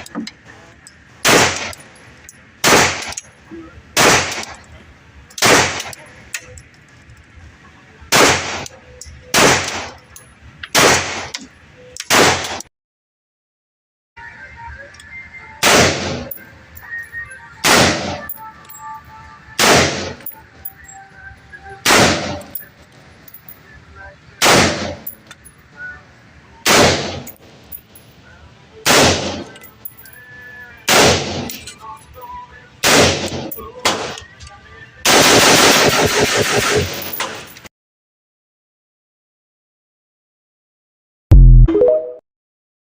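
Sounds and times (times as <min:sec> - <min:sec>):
gunshots with ringing tail: 0:02.6 - 0:03.2, 0:04.0 - 0:04.6, 0:15.6 - 0:16.4, 0:17.6 - 0:18.3, 0:19.6 - 0:20.2, 0:21.8 - 0:22.5, 0:24.4 - 0:25.1, 0:26.6 - 0:27.3, 0:28.8 - 0:29.6, 0:30.9 - 0:31.5, 0:32.8 - 0:34.2, 0:35.1 - 0:37.1.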